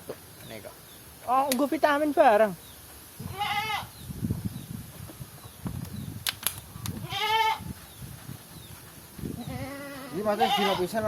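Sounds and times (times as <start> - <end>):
goat bleating: 3.2 - 3.9, 7.0 - 7.7, 9.4 - 11.0
sharp clicks: 6.2 - 7.0.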